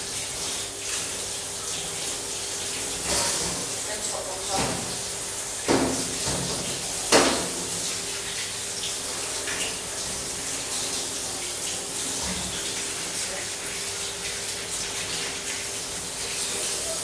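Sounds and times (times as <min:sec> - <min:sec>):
tap water splashing: 0:04.4 - 0:17.0.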